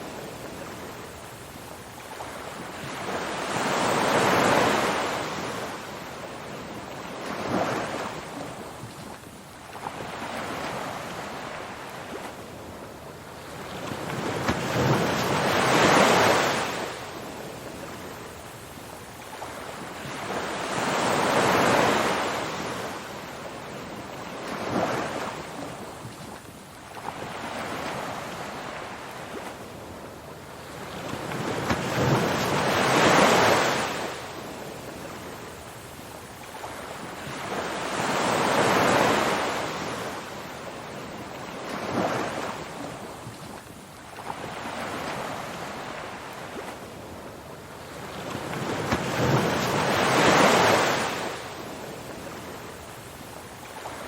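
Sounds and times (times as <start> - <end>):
ocean waves breaking: 47.8 - 52.9.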